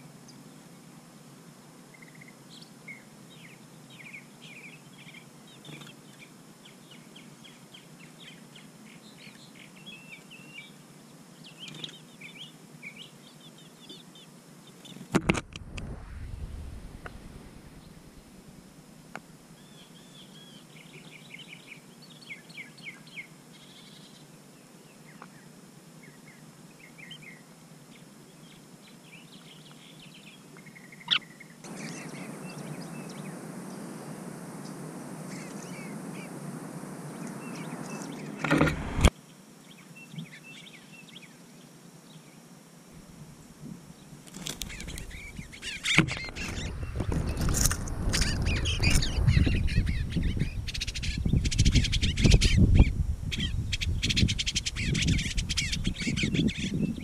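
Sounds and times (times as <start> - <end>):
small birds chirping: 1.9 - 15.1, 19.5 - 42.4, 43.9 - 57.0
steady rushing noise: 15.2 - 19.1, 31.7 - 39.1, 44.5 - 55.9
rough noise with sharp calls: 26.0 - 41.4, 43.9 - 57.0.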